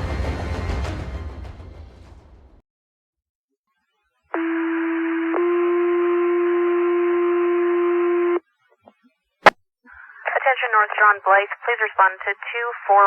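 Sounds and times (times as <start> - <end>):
two-tone pager tone: 4.4 - 8.4.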